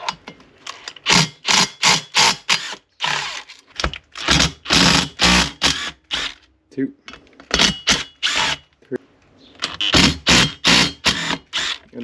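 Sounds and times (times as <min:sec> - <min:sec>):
power driver whirring in bursts: 0:09.8 - 0:11.8.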